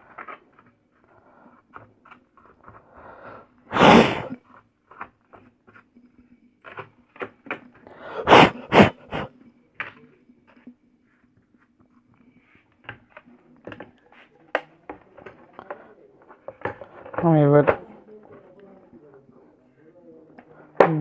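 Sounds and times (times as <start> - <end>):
puffs of breath blowing: 3.0 - 4.4.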